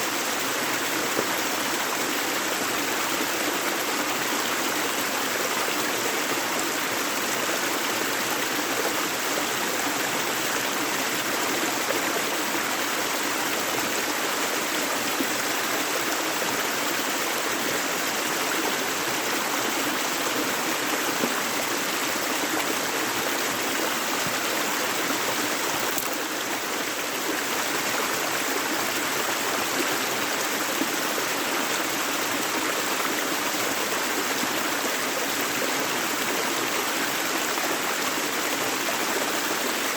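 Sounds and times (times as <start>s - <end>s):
river flowing: 0.0s - 39.9s.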